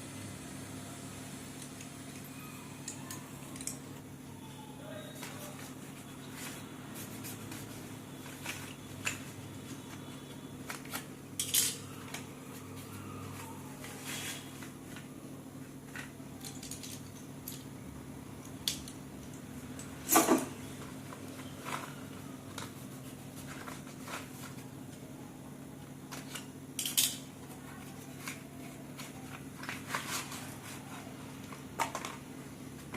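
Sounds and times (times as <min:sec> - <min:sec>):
faint steady hum: 0:00.0 - 0:32.9
pencils and packaging handled: 0:01.6 - 0:32.9.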